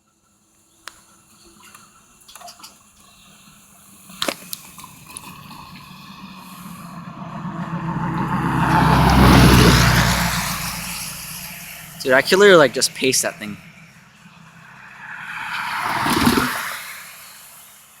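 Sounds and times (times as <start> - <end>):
vehicle engine approaching: 4.5 - 18.0.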